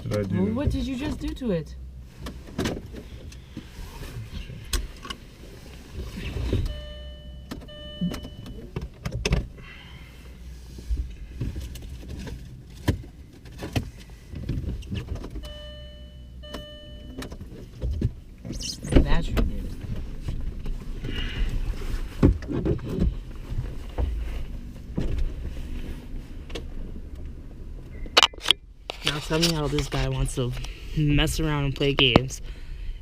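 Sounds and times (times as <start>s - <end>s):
low steady hum: 0.0s - 33.0s
clicks and knocks of car controls: 2.2s - 3.4s, 6.3s - 9.6s, 11.4s - 21.6s, 31.7s - 32.4s
steady electronic tone: 6.6s - 8.6s.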